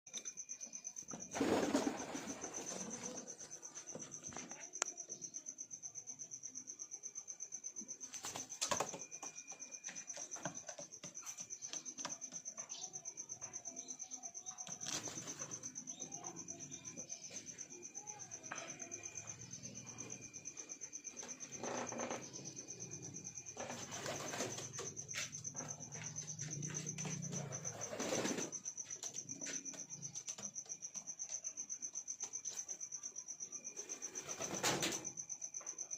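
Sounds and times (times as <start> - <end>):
pigeons flapping wings: 1.2 - 3.2.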